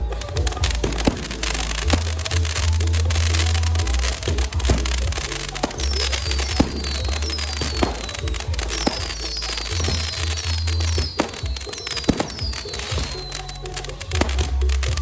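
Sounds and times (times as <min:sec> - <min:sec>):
fireworks banging: 0:00.0 - 0:15.0
loud music with heavy bass: 0:00.0 - 0:15.0
high falling whistles: 0:05.2 - 0:14.4.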